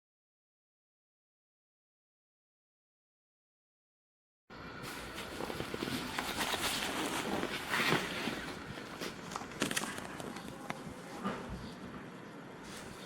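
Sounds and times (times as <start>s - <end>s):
rustling with light clicks: 5.2s - 11.5s.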